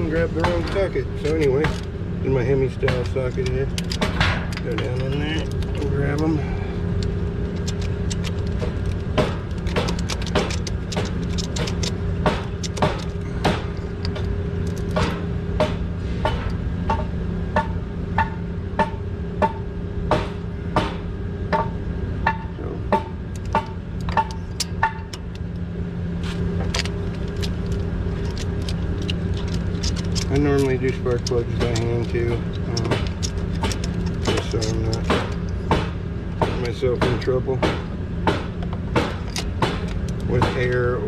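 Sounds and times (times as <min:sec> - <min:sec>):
low mechanical hum: 0:00.0 - 0:41.0
hand ratchet clicking: 0:07.0 - 0:15.0, 0:26.7 - 0:35.6.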